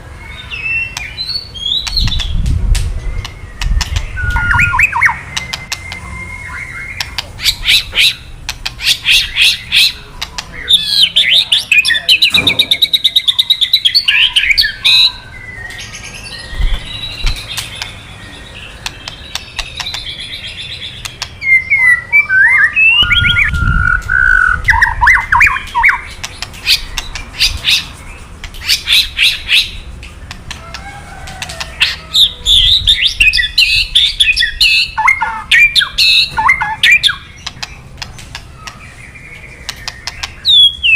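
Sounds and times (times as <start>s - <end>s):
bird whistled song phrases: 3.0s - 12.3s, 12.9s - 26.1s, 31.7s - 37.4s, 38.6s - 40.9s
bird harsh crackling calls: 3.2s - 40.9s.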